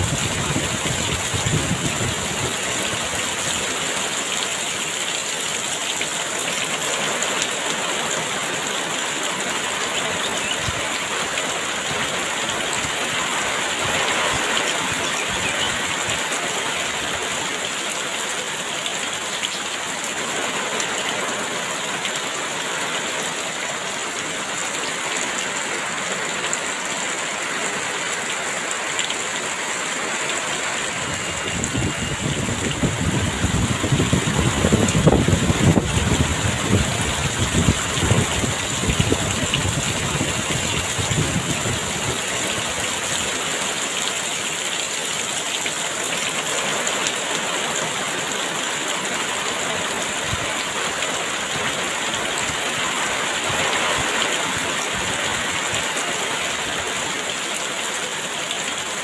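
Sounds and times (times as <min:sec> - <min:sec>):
heavy rain falling: 0:00.0 - 0:59.0
constant high-pitched tone: 0:30.8 - 0:32.8.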